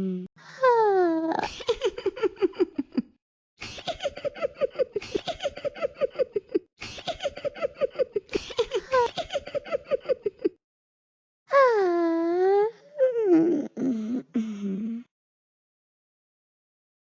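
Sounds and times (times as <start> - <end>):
high-pitched cartoon giggling: 1.4 - 3.1, 3.8 - 10.6.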